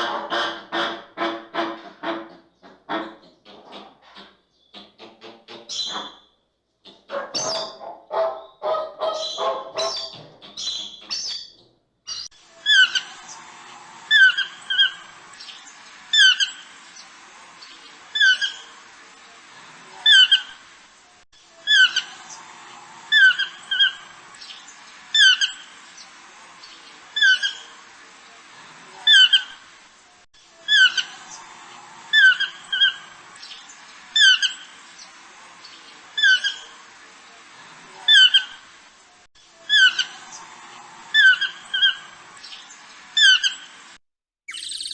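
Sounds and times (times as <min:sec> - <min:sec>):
bird squawking: 0:05.7 - 0:06.2, 0:06.9 - 0:11.5, 0:12.1 - 0:13.3, 0:14.1 - 0:15.1, 0:16.1 - 0:16.6, 0:21.7 - 0:22.1, 0:23.1 - 0:24.0, 0:44.5 - 0:44.9.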